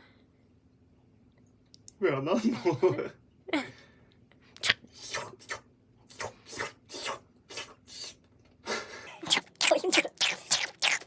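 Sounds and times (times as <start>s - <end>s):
person hissing raspily: 4.6s - 8.2s, 9.1s - 11.0s.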